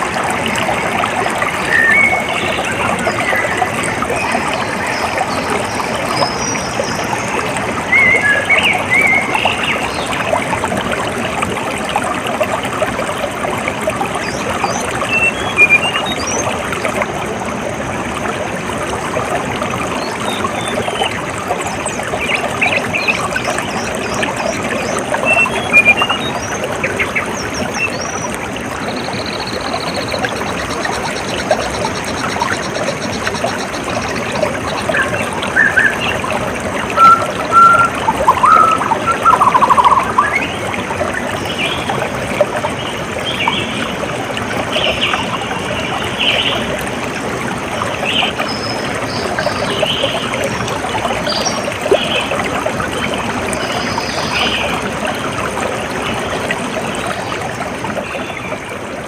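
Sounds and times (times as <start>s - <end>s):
water trickling: 0.0s - 59.0s
bird chirps: 37.0s - 40.5s.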